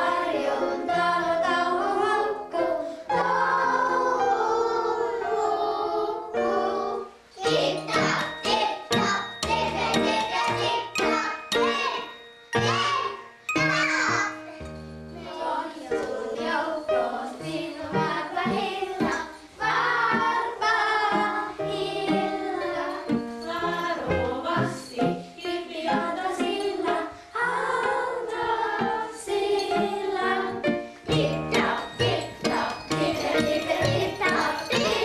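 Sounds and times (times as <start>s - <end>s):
children singing: 0.0s - 14.6s, 15.2s - 35.0s
instrumental accompaniment: 7.4s - 35.0s.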